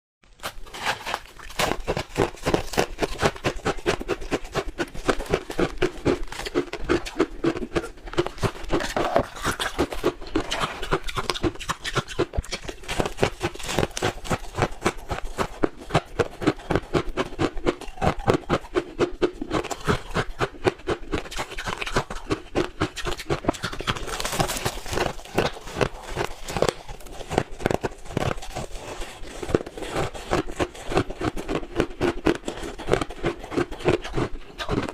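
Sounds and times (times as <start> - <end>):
crushed ice being chewed: 0.3 - 34.9.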